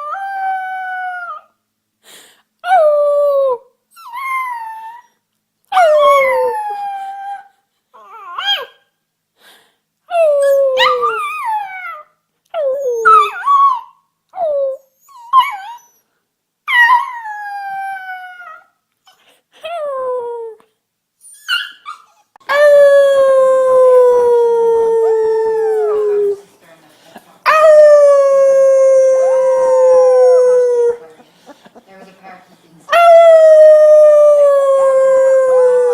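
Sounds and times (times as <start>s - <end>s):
puppy howling: 21.5s - 26.4s, 27.5s - 31.1s, 32.9s - 35.9s.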